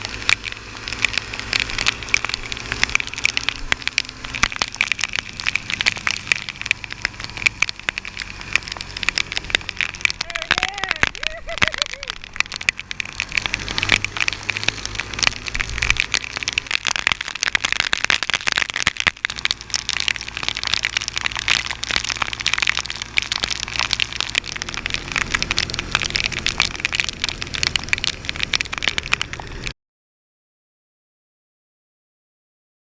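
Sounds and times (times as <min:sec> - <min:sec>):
low engine hum: 0:00.0 - 0:29.7
rain hitting camera housing: 0:00.0 - 0:29.7.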